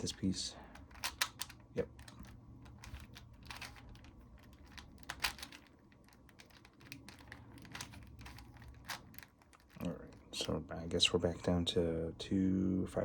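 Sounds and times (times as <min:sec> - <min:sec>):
plastic puzzle cube clicking: 0:00.7 - 0:09.9.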